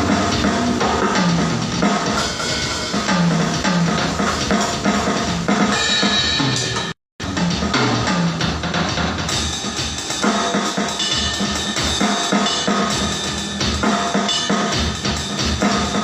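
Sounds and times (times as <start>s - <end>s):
drum hits: 0.0s - 16.0s
cymbals washing: 9.4s - 16.0s.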